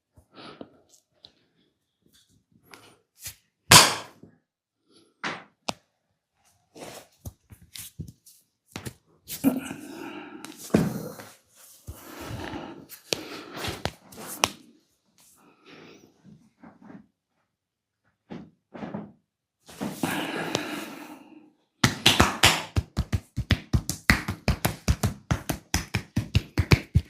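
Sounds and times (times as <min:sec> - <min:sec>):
hands rubbing skin: 0:11.6 - 0:14.6, 0:21.8 - 0:27.0
hands slapping skin: 0:13.1 - 0:14.6, 0:21.8 - 0:27.0.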